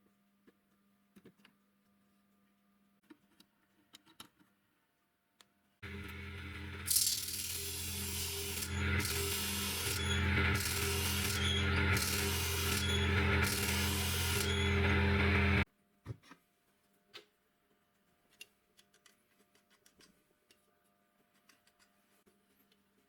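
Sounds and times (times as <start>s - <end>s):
drill bit grinding hiss: 5.8s - 15.6s
electric motor humming: 5.8s - 15.6s.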